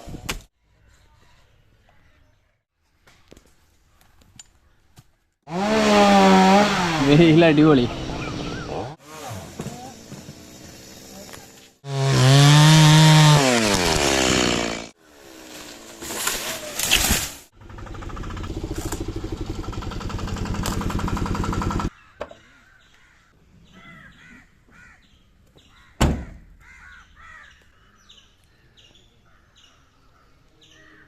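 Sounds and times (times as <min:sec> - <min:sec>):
chainsaw running: 0:05.5 - 0:16.7, 0:17.6 - 0:21.9
birds calling: 0:06.7 - 0:09.0, 0:21.8 - 0:31.0
crows cawing: 0:21.9 - 0:25.1, 0:26.6 - 0:28.0.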